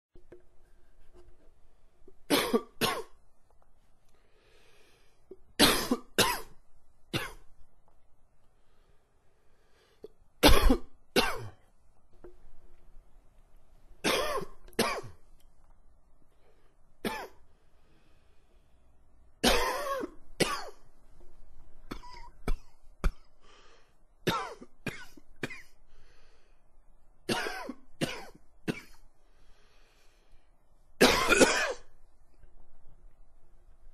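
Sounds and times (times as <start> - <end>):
man coughing: 2.3 - 3.2, 5.6 - 6.5, 14.1 - 15.1, 19.4 - 20.8, 21.9 - 23.3, 31.0 - 31.9.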